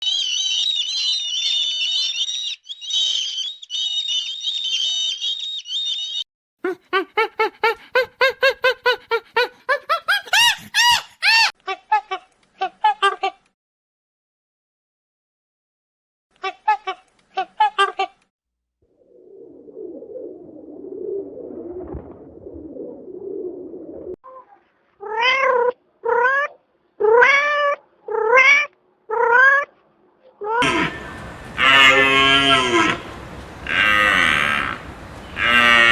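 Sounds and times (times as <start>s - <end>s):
animal giving rapid short calls: 30.6s - 35.9s
small birds chirping: 30.6s - 35.9s.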